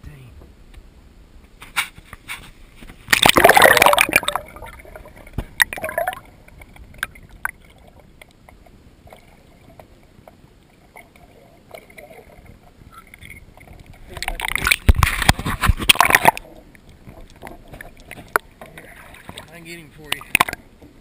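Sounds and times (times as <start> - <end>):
water splashing: 1.6 - 21.0.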